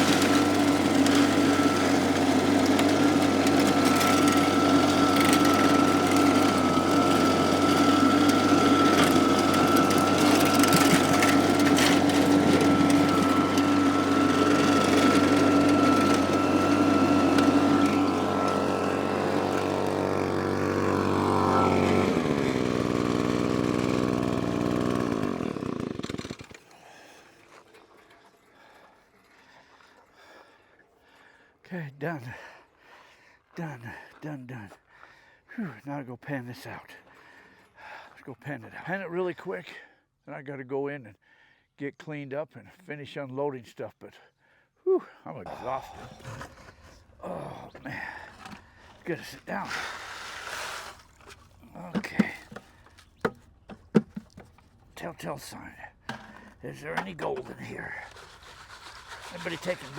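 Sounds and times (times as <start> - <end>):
engine-driven vacuum running: 0.0 - 27.0, 45.5 - 59.9.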